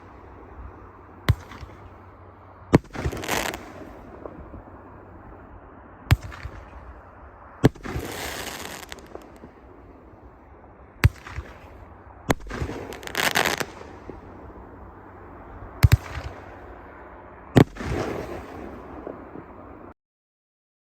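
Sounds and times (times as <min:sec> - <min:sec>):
hissing crackle: 0:00.0 - 0:05.2, 0:06.1 - 0:10.1, 0:11.0 - 0:15.2
firework launch report: 0:00.0 - 0:20.0
firework loud break: 0:02.8 - 0:04.7, 0:07.6 - 0:09.6.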